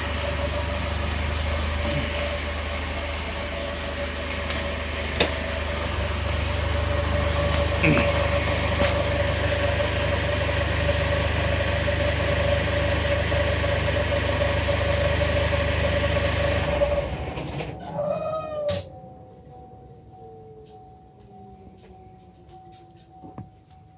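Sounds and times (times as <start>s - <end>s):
car engine idling with whistle: 0.0s - 17.9s
falling whistle-groan: 17.8s - 19.3s.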